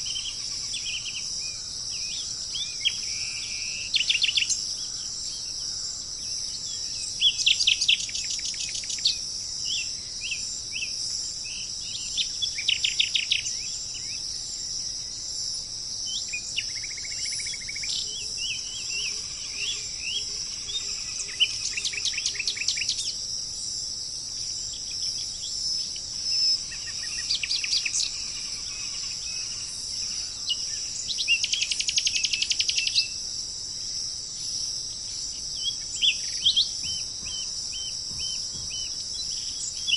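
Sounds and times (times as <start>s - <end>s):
insects droning: 0.0s - 39.9s
birds chirping: 24.7s - 33.2s, 34.4s - 39.9s.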